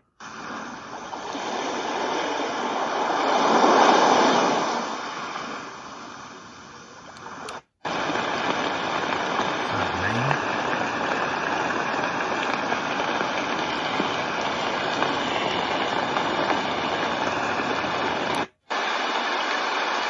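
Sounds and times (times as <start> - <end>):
white noise machine water rushing: 12.6 - 20.0.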